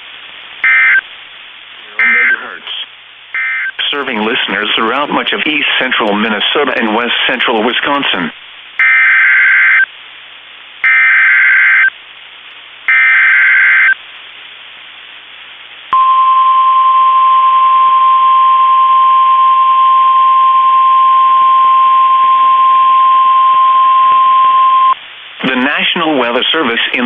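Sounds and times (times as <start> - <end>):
steady warning alarm tone: 0.6 - 1.0, 2.0 - 2.4, 3.4 - 3.8, 8.8 - 9.9, 10.8 - 11.9, 12.9 - 14.0
warbling digital data bursts: 3.4 - 3.8.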